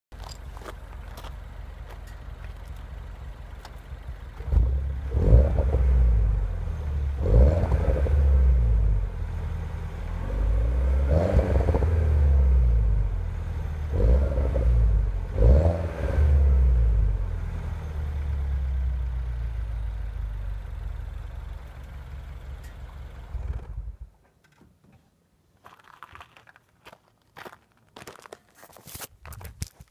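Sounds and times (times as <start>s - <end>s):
car engine idling and revving: 0.1s - 24.1s.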